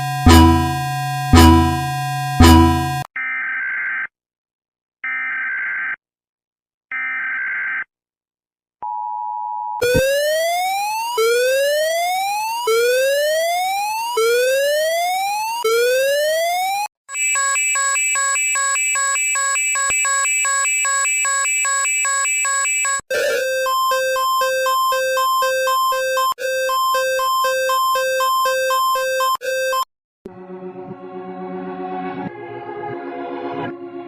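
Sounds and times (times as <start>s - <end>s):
buzzing alarm tone: 0.0s - 3.1s, 9.8s - 29.9s
pulsing alarm tone: 0.0s - 3.1s, 9.8s - 29.9s
steady alarm tone: 0.0s - 3.1s, 9.8s - 29.9s
electronic alarm beeps: 0.0s - 3.5s, 9.8s - 29.9s.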